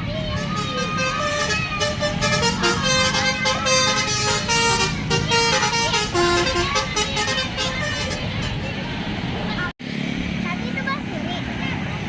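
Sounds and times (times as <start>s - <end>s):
bus engine running: 0.0s - 12.0s
musical bus horn tune: 0.2s - 8.8s.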